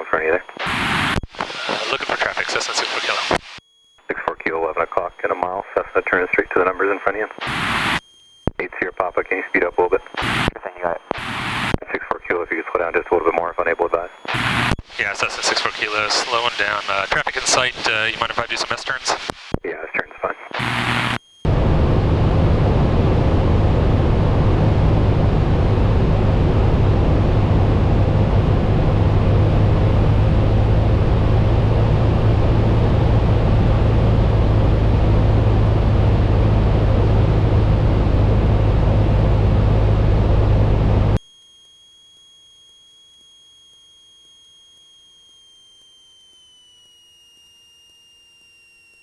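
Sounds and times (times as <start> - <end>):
high-pitched electronic whine: 0.0 - 19.6, 20.4 - 49.0
plane engine and propeller droning: 21.5 - 41.2.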